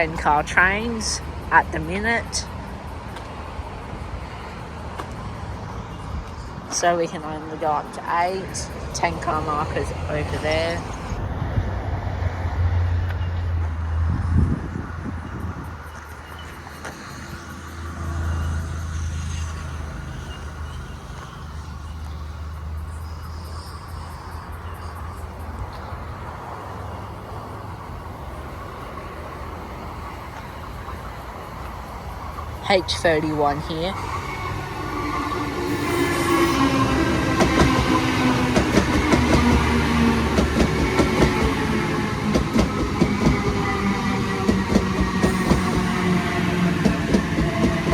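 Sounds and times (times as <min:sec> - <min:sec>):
electric train rumble and hum: 0:00.0 - 0:47.9
train wheels clicking over rail joints: 0:34.1 - 0:47.9.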